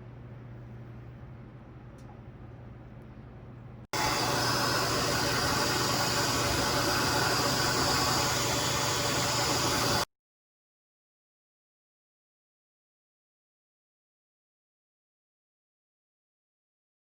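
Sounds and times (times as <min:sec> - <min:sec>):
hair dryer running: 0:04.0 - 0:10.1.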